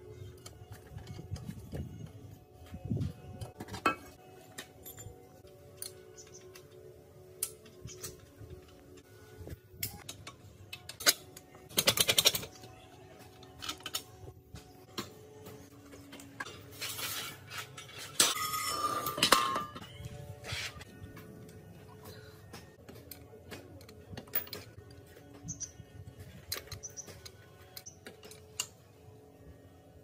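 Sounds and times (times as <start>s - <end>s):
faint background music: 0.0s - 30.0s
metal tools clinking: 3.6s - 6.5s, 16.4s - 20.1s.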